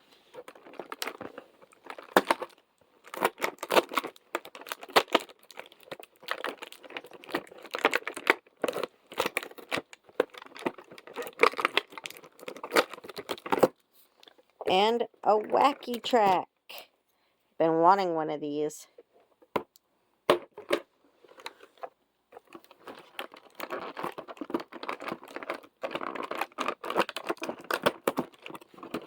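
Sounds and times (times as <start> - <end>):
packaging tearing and crinkling: 0.3 - 14.4, 22.4 - 29.0.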